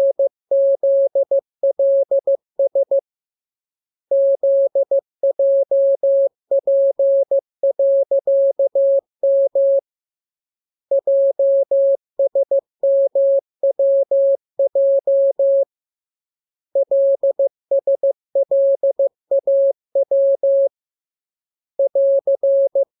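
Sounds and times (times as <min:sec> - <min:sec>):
morse code beeps: 0:04.1 - 0:09.8, 0:10.9 - 0:15.6, 0:16.8 - 0:20.7, 0:21.8 - 0:22.9.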